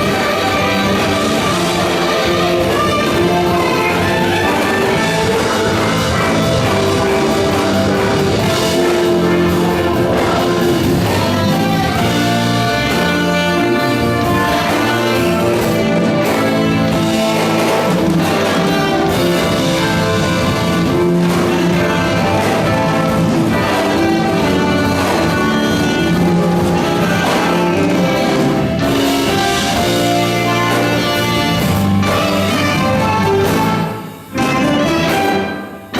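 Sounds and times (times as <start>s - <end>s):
instrumental ensemble music: 0.0s - 35.9s.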